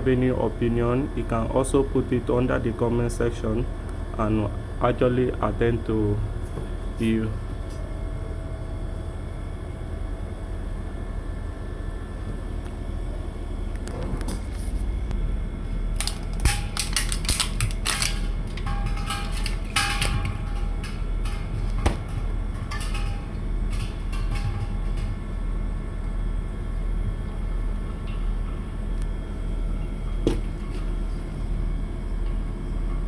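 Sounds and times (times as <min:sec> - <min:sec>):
air conditioner unit humming: 0:00.0 - 0:33.0.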